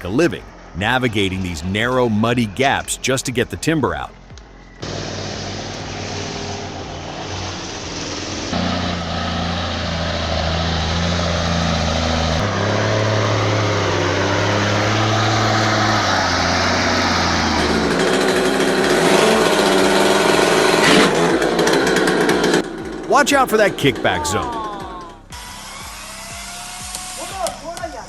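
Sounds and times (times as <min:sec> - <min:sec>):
higher-pitched engine: 0:04.3 - 0:27.3
truck diesel engine under load: 0:04.8 - 0:24.6.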